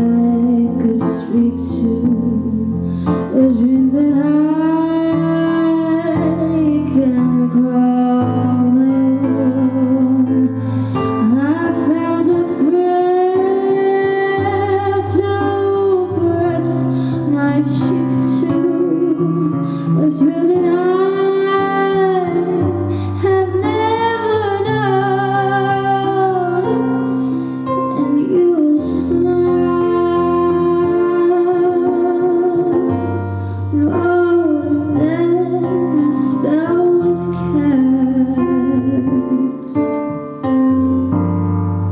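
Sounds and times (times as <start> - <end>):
woman singing with vibrato: 0.0 - 10.6, 11.2 - 27.2, 27.8 - 39.9
sustained keyboard chords: 0.0 - 41.9.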